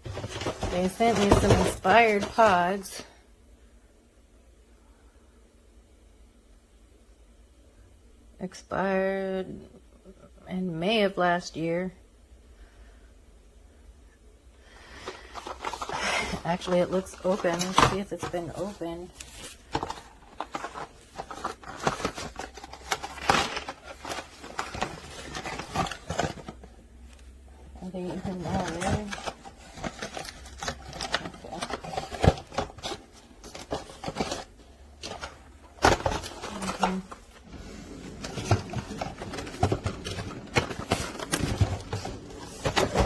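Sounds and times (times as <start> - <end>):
packet rustling: 0.0 - 3.0, 14.9 - 26.9, 27.6 - 43.0.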